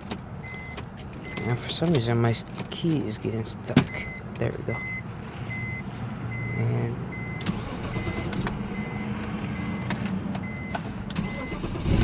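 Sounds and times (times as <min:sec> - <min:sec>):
dashboard warning chime beeping: 0:00.4 - 0:02.2, 0:03.7 - 0:11.9
car engine cranking: 0:07.1 - 0:12.0
engine starting: 0:07.4 - 0:08.6, 0:11.2 - 0:12.0.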